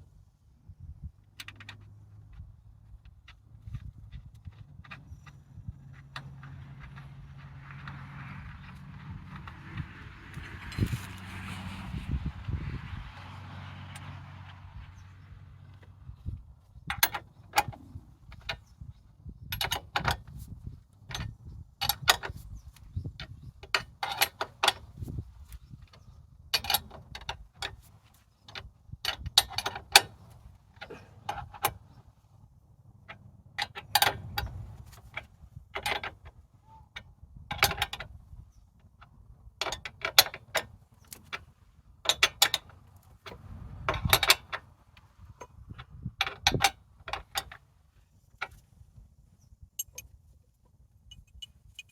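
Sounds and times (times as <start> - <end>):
hand tools ratcheting on metal: 49.8 - 50.1.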